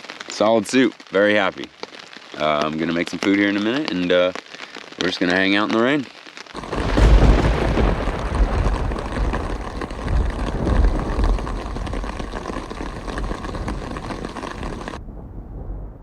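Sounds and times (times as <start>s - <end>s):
rain: 0.0s - 15.2s
thunder rolling: 6.6s - 16.0s.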